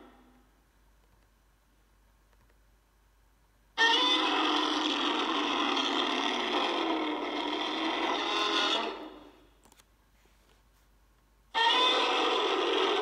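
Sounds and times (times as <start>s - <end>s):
monster roar: 3.9s - 9.3s, 11.6s - 13.0s.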